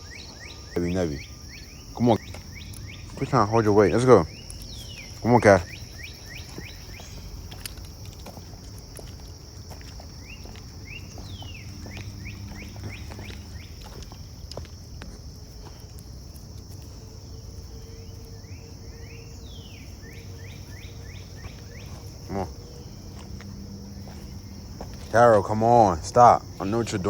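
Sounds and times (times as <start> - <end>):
bird chirping: 0.0 - 9.2, 9.8 - 14.8, 16.8 - 27.0
insects buzzing: 0.0 - 27.0.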